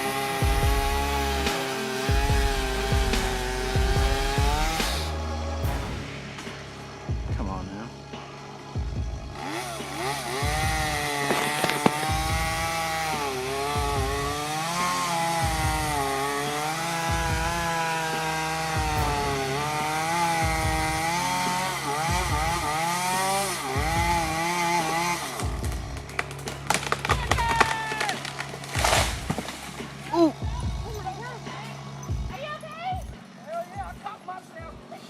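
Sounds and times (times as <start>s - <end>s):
chainsaw cutting wood: 0.0s - 5.8s, 9.2s - 30.6s.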